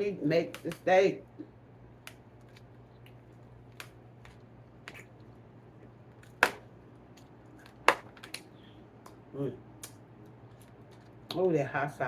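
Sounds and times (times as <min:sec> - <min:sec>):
person chewing with mouth smacks: 0:02.4 - 0:05.4.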